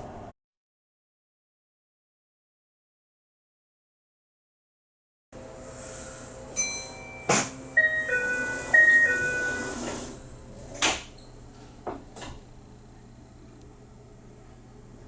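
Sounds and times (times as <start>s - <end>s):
electronic chime tune: 6.6s - 9.8s
train doors clunking shut: 7.2s - 11.2s.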